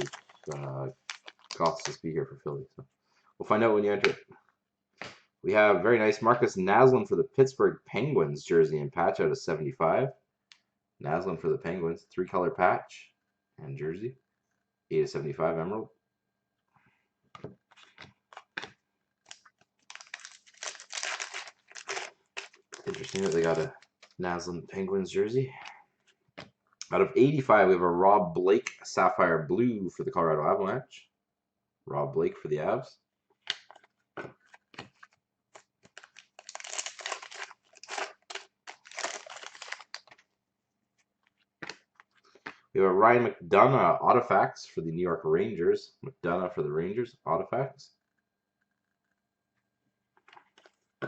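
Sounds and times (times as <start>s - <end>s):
foil wrapper tearing and crinkling: 0.0s - 1.9s, 19.2s - 24.2s, 34.5s - 40.3s
cards rustling and clicking: 0.0s - 2.0s, 17.4s - 24.2s, 33.5s - 40.3s.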